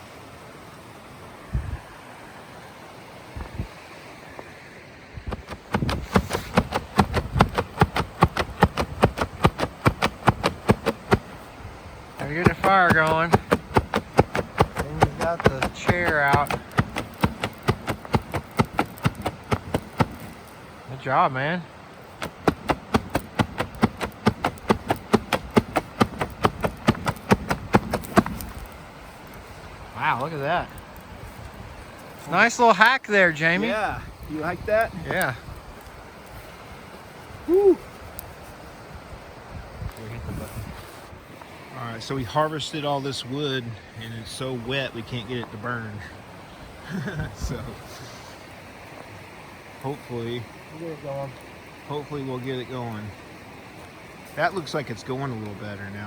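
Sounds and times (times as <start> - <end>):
fast strikes on wood: 5.2 - 11.4, 12.2 - 20.4, 22.2 - 28.7
wood chopping knocks: 5.3 - 11.3, 12.2 - 20.4, 22.2 - 28.7.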